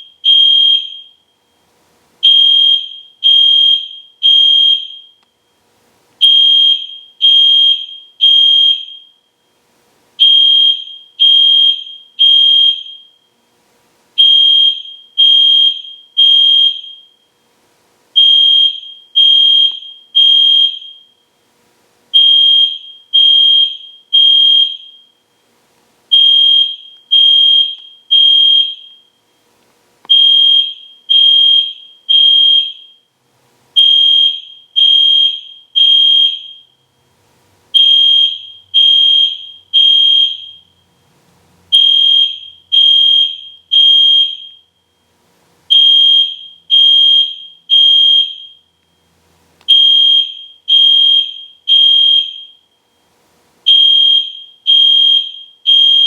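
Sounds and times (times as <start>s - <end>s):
fire alarm horn beeping: 0.0s - 1.3s, 2.2s - 5.2s, 6.2s - 9.3s, 10.2s - 13.4s, 14.2s - 17.4s, 18.2s - 21.2s, 22.1s - 25.2s, 26.1s - 29.2s, 30.1s - 33.1s, 33.8s - 36.8s, 37.7s - 41.0s, 41.7s - 45.1s, 45.7s - 48.7s, 49.7s - 53.0s, 53.7s - 56.0s.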